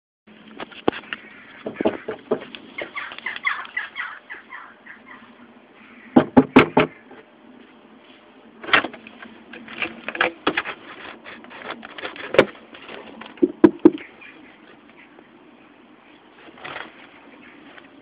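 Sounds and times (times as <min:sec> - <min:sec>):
sharp knocks and rattles: 0:00.7 - 0:02.5, 0:06.2 - 0:07.2, 0:08.6 - 0:14.1.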